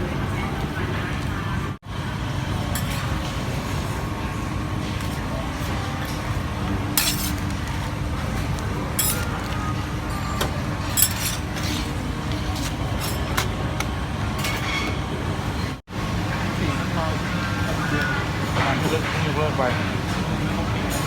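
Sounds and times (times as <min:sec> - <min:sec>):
street traffic rumble: 0:00.0 - 0:21.0
cooking utensils clinking and scraping: 0:02.6 - 0:15.8.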